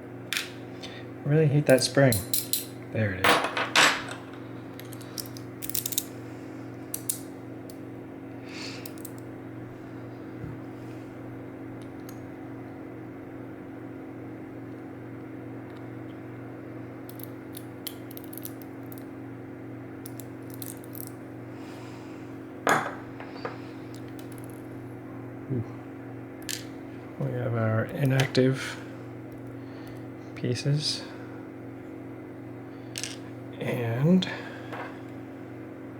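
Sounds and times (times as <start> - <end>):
steady background hum: 0.0 - 35.9
small metal pins clicking: 4.8 - 6.1, 6.9 - 7.8, 8.8 - 9.2, 17.1 - 19.0, 20.0 - 21.1.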